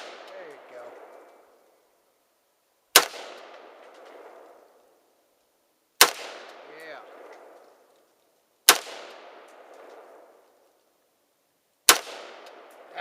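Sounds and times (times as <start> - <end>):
gunshots echoing: 0.0 - 1.6, 2.9 - 4.8, 6.0 - 7.9, 8.6 - 10.4, 11.9 - 13.0.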